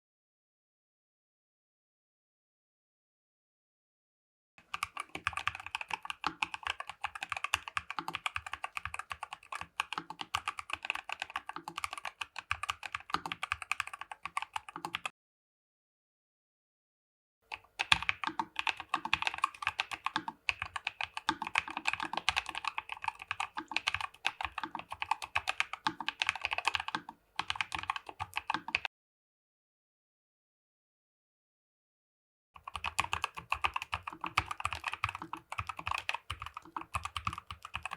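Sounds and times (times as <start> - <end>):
mechanical keyboard typing: 4.6 - 15.1, 17.5 - 28.9, 32.6 - 37.9.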